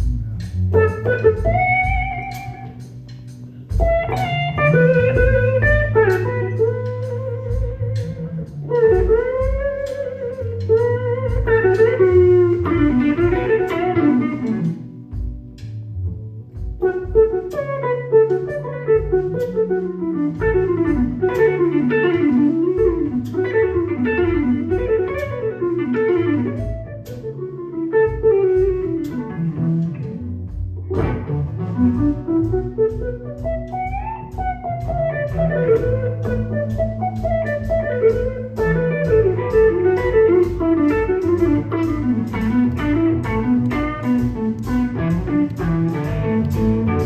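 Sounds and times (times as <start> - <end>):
electric guitar solo: 0.0 - 15.6, 16.6 - 47.0
bass and drums: 0.0 - 47.0.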